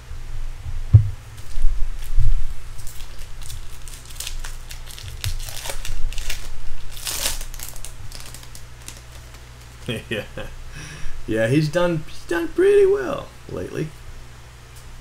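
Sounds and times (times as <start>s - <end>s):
low electrical hum: 0.0s - 15.0s
wrappers crinkling: 1.4s - 9.9s.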